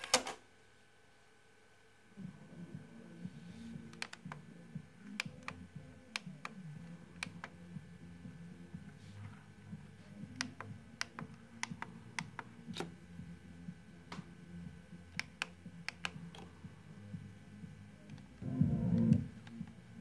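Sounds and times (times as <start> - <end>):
steady low hum: 0.4 - 20.0
sharp clicks: 15.1 - 16.5.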